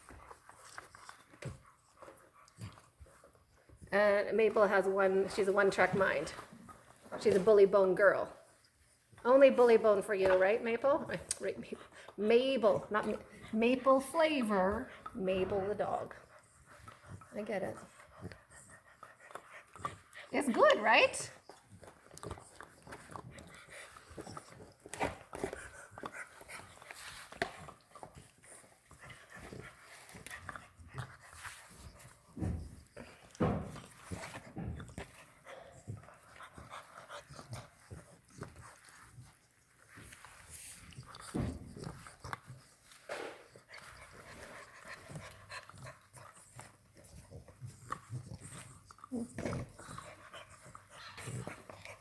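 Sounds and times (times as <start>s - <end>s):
puppies panting: 0.0s - 52.0s
teeth scraping on bone: 40.1s - 52.0s.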